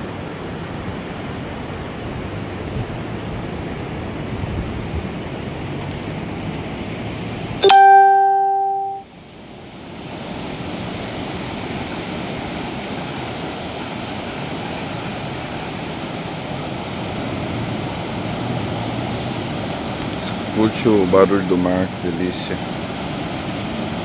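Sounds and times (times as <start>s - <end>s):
waves washing on beach: 0.0s - 24.0s
chime-like ringing tone: 7.6s - 9.1s.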